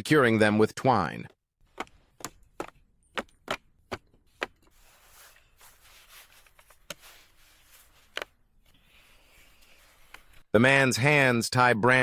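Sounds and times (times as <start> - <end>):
branches rustling: 1.6 - 10.4.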